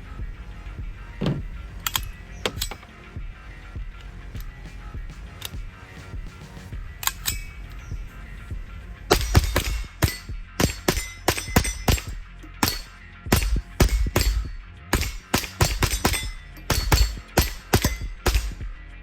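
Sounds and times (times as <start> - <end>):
background music: 0.0 - 19.0
steel targets clanging: 7.1 - 7.6, 9.1 - 18.6
rifle rapid fire: 9.1 - 18.6.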